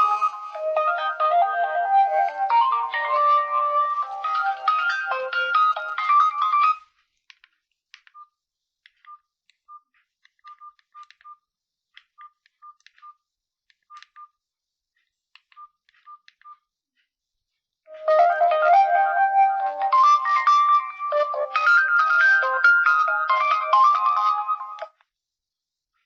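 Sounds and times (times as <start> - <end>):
phone ringtone melody: 0.0 - 6.8, 17.9 - 24.9
key beeps: 9.0 - 11.4, 12.1 - 13.2, 13.8 - 14.4, 15.4 - 16.6.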